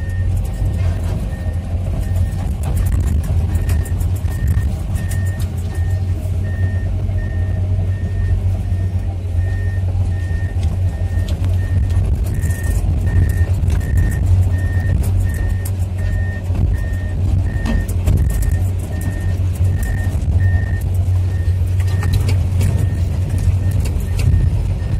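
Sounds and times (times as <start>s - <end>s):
excavator diesel engine running: 0.0s - 24.9s
travel alarm beeping: 0.0s - 24.9s
scattered clicks: 10.6s - 24.6s.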